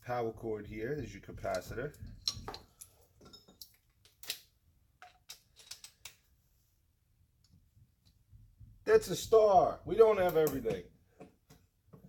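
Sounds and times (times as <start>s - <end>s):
clinks of small hand tools: 1.5s - 6.2s.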